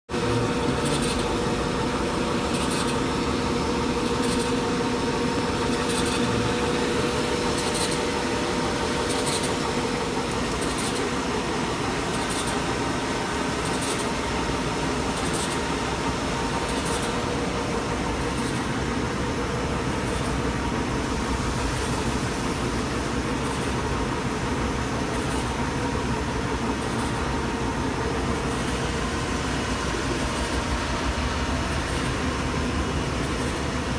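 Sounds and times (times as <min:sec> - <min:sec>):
grinding machine hum: 0:00.1 - 0:33.9.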